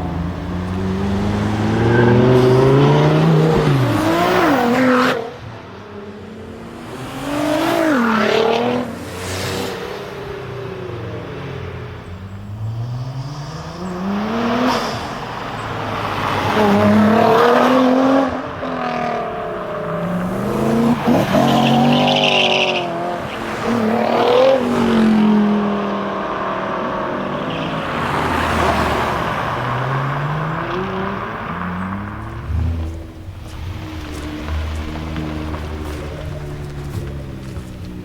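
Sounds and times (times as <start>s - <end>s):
sports car engines accelerating: 0.0s - 38.0s.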